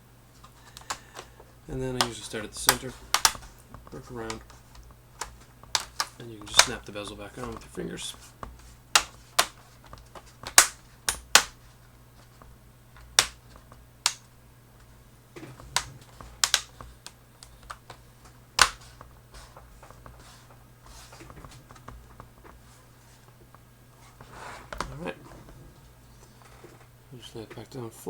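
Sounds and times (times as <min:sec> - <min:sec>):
plastic clips clicking into place: 0:01.9 - 0:07.7, 0:08.9 - 0:11.6, 0:13.0 - 0:14.3, 0:15.4 - 0:18.0, 0:18.6 - 0:18.9.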